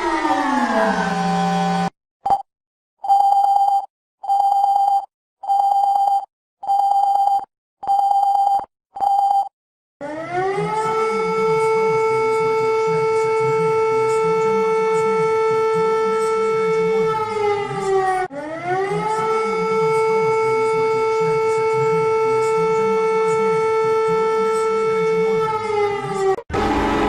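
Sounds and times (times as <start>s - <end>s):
emergency alert siren: 0.0s - 2.0s, 10.0s - 27.0s.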